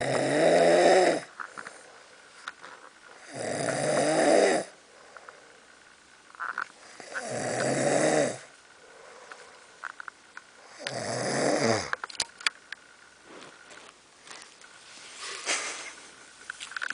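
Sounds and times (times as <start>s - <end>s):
person snoring: 0.0s - 1.3s, 3.2s - 4.8s, 6.8s - 9.2s, 10.6s - 12.0s
quiet breathing: 1.1s - 6.0s, 6.8s - 11.0s, 13.2s - 16.5s.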